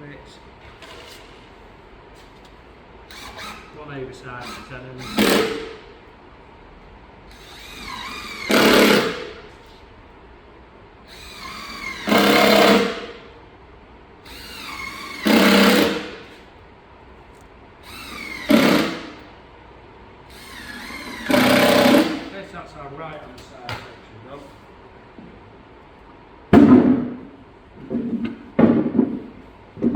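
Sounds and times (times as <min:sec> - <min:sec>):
power drill driving screws: 0:03.1 - 0:03.7, 0:04.4 - 0:05.8, 0:07.3 - 0:09.4, 0:11.1 - 0:13.2, 0:14.3 - 0:16.3, 0:17.8 - 0:19.3, 0:20.3 - 0:22.3.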